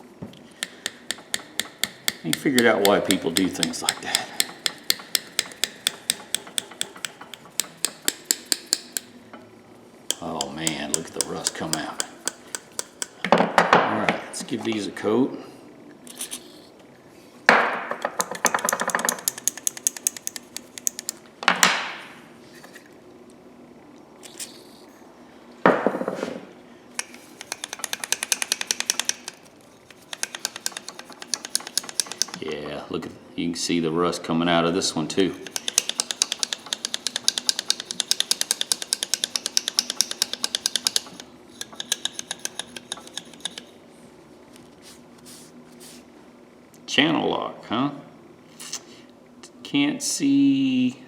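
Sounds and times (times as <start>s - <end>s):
metallic clicks: 0.6s - 9.1s, 10.1s - 13.2s, 18.2s - 21.2s, 27.0s - 32.5s, 35.4s - 43.7s.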